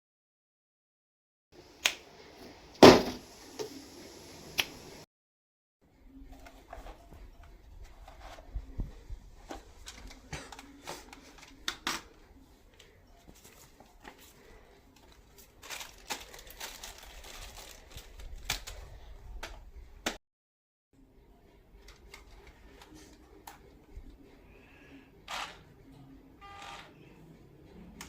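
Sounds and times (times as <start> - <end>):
clicks knocks and rustling: 2.8 - 3.8.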